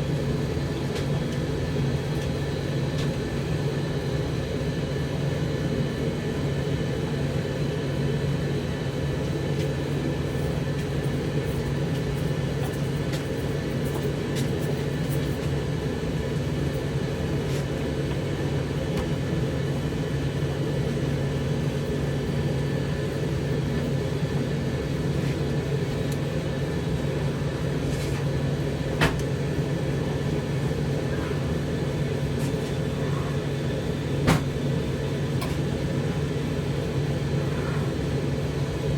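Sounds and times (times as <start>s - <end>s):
tumble dryer humming: 0.0s - 38.9s.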